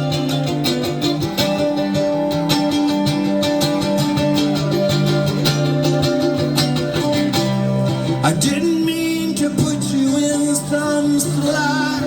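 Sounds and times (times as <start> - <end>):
picked guitar: 0.0 - 12.0.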